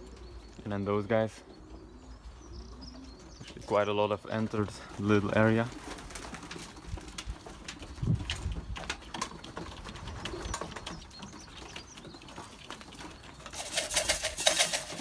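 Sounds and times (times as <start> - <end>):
pigeons cooing: 0.0 - 15.0
rapid clattering: 13.4 - 15.0.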